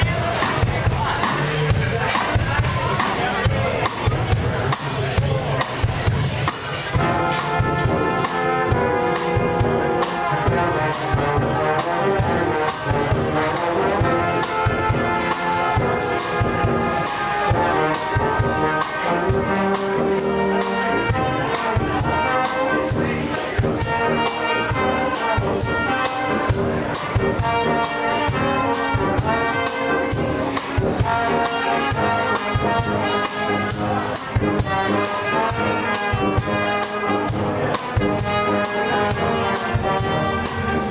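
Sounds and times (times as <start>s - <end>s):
brass street band: 0.0s - 40.9s
steady drum beat: 0.0s - 40.9s.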